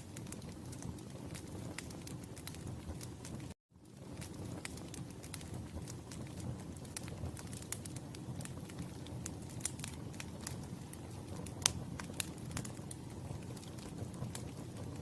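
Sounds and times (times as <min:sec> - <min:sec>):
campfire rumble: 0:00.0 - 0:15.0
wood crackling and popping: 0:00.0 - 0:15.0.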